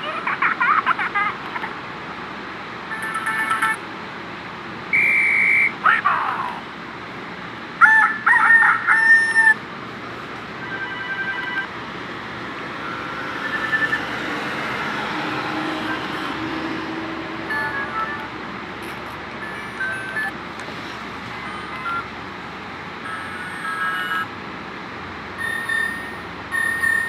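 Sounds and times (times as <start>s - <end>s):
phone ringtone: 2.9s - 3.8s, 10.6s - 11.7s, 12.8s - 14.3s, 15.8s - 16.4s, 17.5s - 18.3s, 19.4s - 20.4s, 21.4s - 22.1s, 23.0s - 24.3s, 25.4s - 27.0s.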